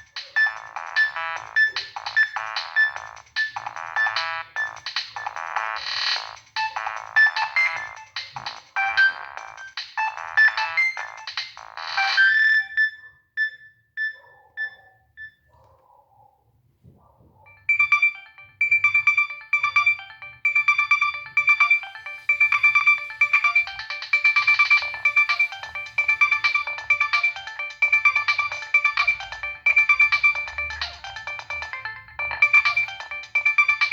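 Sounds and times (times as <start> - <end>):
polyphonic phone ringtones: 0.0 - 15.4, 17.5 - 33.9.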